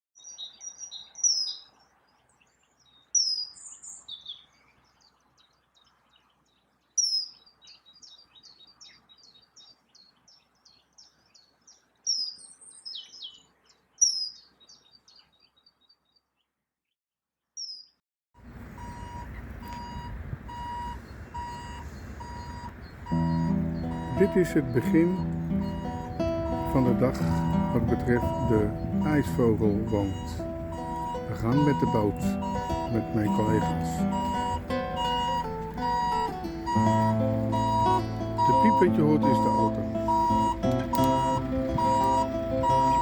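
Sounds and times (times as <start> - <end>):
small bird singing: 0.2 - 16.6, 17.6 - 18.0, 18.8 - 43.0
repeating beep: 18.8 - 43.0.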